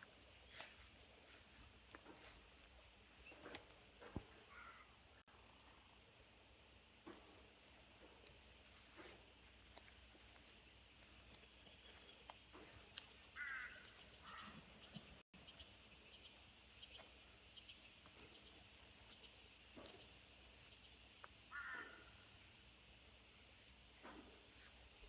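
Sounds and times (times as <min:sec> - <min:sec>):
small birds chirping: 0:00.0 - 0:25.0
crows cawing: 0:04.4 - 0:05.0, 0:13.3 - 0:14.7, 0:21.5 - 0:22.2.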